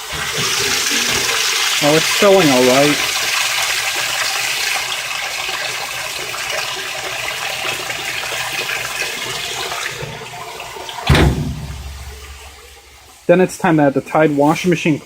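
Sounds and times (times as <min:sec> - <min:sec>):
water rushing into washer tub: 0:00.0 - 0:15.0
loud thump: 0:11.1 - 0:12.7.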